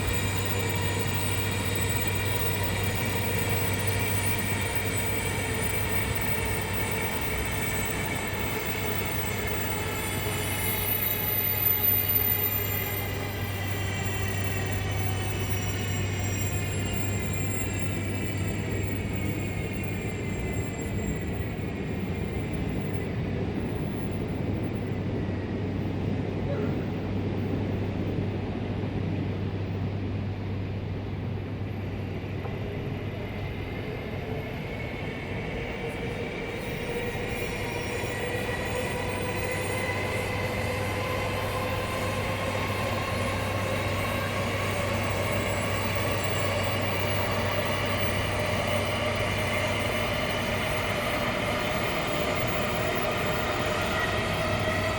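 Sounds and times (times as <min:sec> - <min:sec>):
train motor whine: 0:00.0 - 0:24.2, 0:30.3 - 0:54.9
constant low hum: 0:00.0 - 0:35.0.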